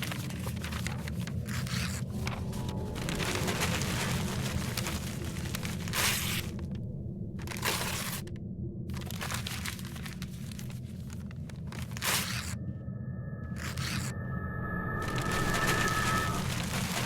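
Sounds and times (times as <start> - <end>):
paper tearing and crumpling: 0.0 - 6.8, 7.4 - 8.3, 8.9 - 12.6, 13.5 - 14.1, 15.0 - 17.0
steady low hum: 0.6 - 16.6.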